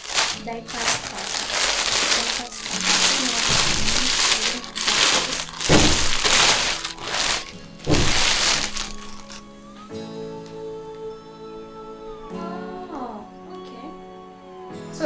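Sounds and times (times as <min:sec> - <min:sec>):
dull thumps: 0:00.0 - 0:09.4
plastic packaging crinkling: 0:00.0 - 0:09.4.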